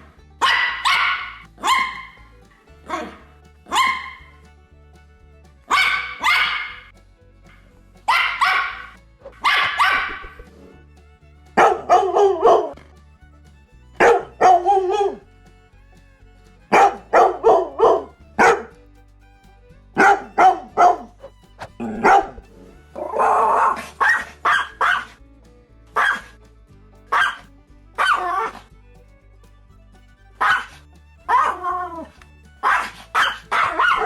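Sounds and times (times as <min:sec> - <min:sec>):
faint background music: 0:00.0 - 0:34.0
dog barking: 0:00.4 - 0:02.1, 0:03.7 - 0:04.2, 0:05.7 - 0:06.8, 0:08.1 - 0:10.3, 0:11.6 - 0:12.8, 0:14.0 - 0:15.1, 0:16.8 - 0:18.7, 0:20.0 - 0:21.1, 0:21.9 - 0:22.4, 0:24.0 - 0:25.0, 0:26.0 - 0:26.2, 0:30.4 - 0:30.6, 0:32.6 - 0:34.0.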